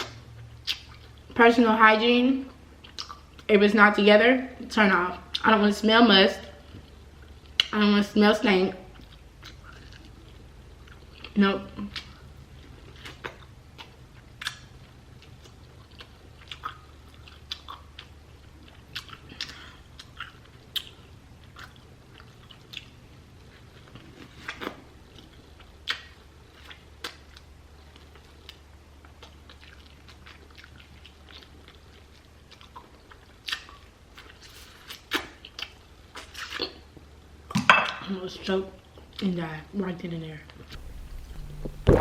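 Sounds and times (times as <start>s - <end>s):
person chewing and crunching: 8.9s - 36.8s, 40.8s - 42.0s
faint low hum: 40.7s - 42.0s.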